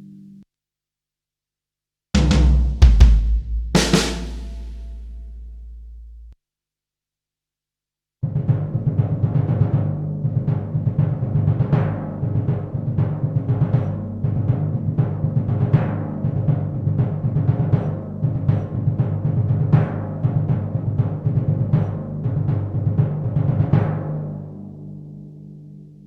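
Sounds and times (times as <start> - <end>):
acoustic drum kit: 2.2 - 6.4, 8.4 - 24.4
rapid ringing low tom hits: 2.2 - 6.4.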